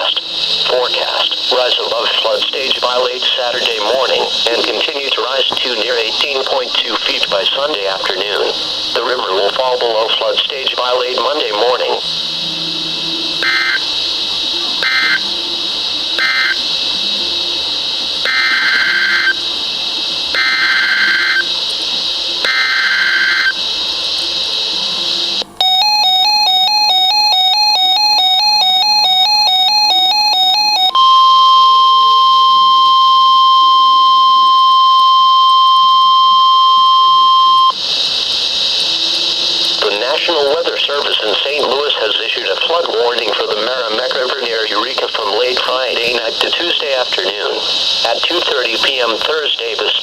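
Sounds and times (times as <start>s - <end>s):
steady radio hiss: 0.0s - 26.6s, 30.7s - 50.0s
buzzing digital data bursts: 0.0s - 41.9s
rapidly alternating electronic alarm: 0.0s - 50.0s
steady weather alarm tone: 0.0s - 50.0s.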